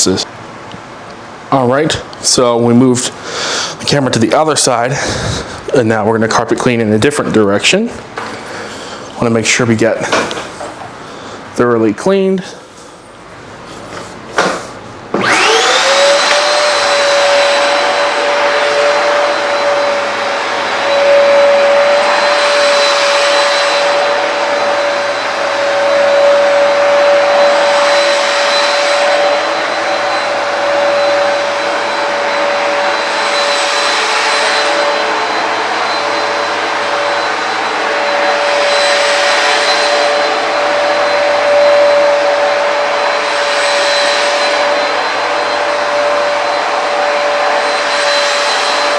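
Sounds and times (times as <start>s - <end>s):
carpet cleaner motor whine: 14.4s - 48.9s.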